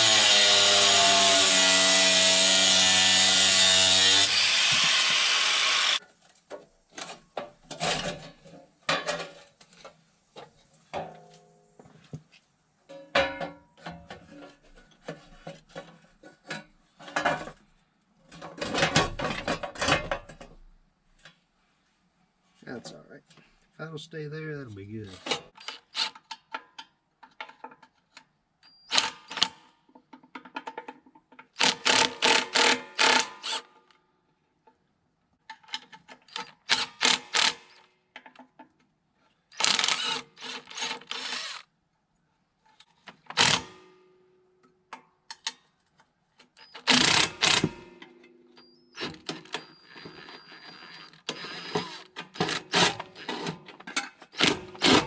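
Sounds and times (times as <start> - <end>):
impact wrench hammering: 1.8 - 6.0, 46.9 - 47.8.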